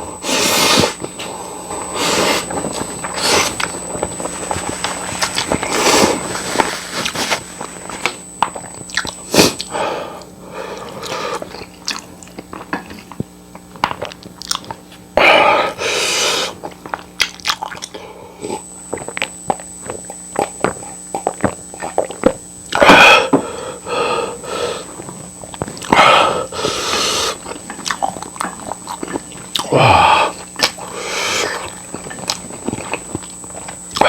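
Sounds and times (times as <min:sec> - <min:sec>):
chewing and biting: 0:04.5 - 0:06.1, 0:08.4 - 0:09.7, 0:10.8 - 0:15.1, 0:16.6 - 0:22.4, 0:25.0 - 0:26.0, 0:26.9 - 0:29.7, 0:30.4 - 0:34.0.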